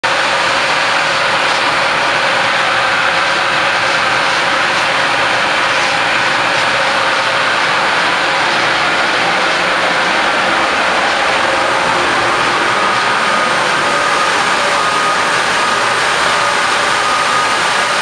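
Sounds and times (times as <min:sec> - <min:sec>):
loud rush of air: 0:00.0 - 0:18.0
steady whining tones: 0:00.0 - 0:18.0.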